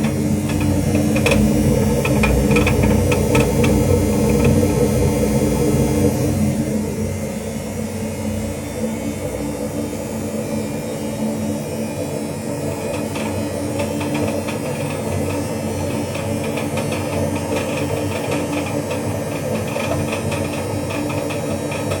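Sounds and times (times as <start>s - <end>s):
fast irregular knocking rattle: 0.0s - 4.8s, 12.7s - 22.0s
washing machine humming: 0.0s - 22.0s.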